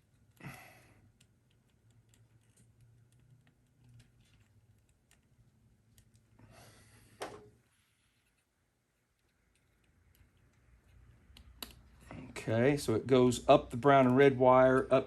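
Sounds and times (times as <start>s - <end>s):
clicks of wiring connectors: 11.3s - 12.1s.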